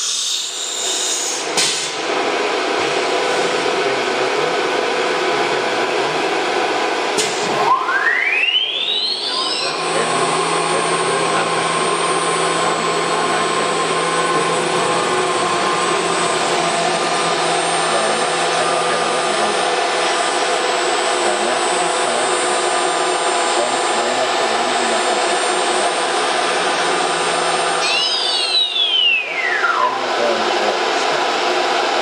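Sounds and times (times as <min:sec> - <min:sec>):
router spindle whine: 0:00.0 - 0:32.0
vacuum pump rushing noise: 0:09.7 - 0:32.0.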